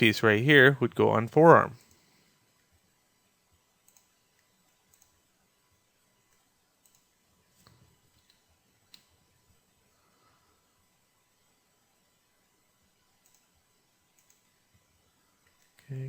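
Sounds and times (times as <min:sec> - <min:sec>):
mouse and keyboard clicks: 0:03.8 - 0:05.2, 0:06.3 - 0:09.1, 0:13.2 - 0:13.5, 0:14.1 - 0:14.5.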